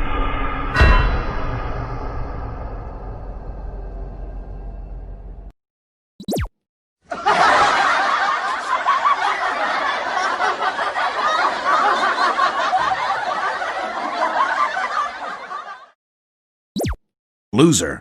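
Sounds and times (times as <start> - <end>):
crowd laughing: 7.1 - 16.0.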